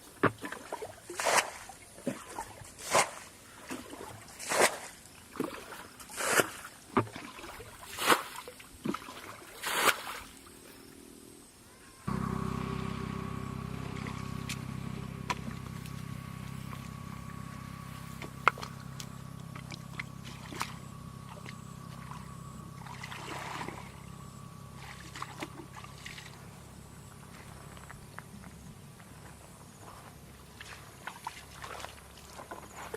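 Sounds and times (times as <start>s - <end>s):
small engine humming: 11.7s - 32.9s
loud water splashes: 22.8s - 24.0s.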